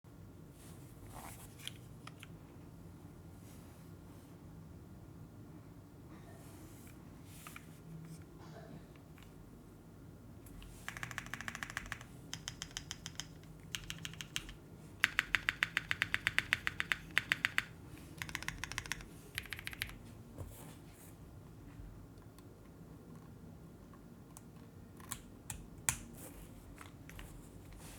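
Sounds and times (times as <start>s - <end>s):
mechanical keyboard typing: 10.8s - 20.0s.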